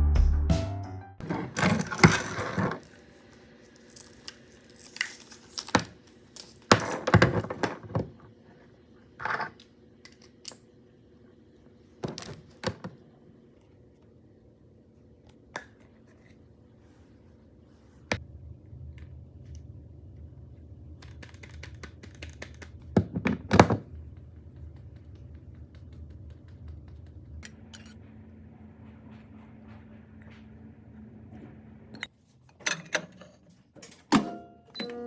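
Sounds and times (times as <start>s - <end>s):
low steady hum: 0.0s - 32.1s
small objects clicking and knocking: 1.6s - 7.9s.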